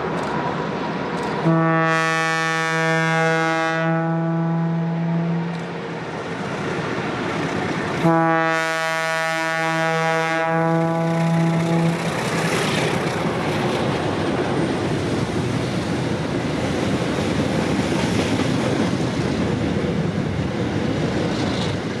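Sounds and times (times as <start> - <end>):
freight train rumbling past: 0.0 - 22.0
locomotive air horn: 1.4 - 5.5, 8.0 - 12.1.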